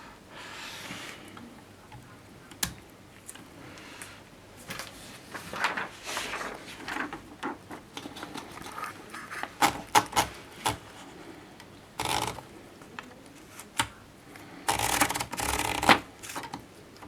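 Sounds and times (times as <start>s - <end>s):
typewriter mechanical clicks: 12.0s - 12.5s, 14.6s - 16.7s.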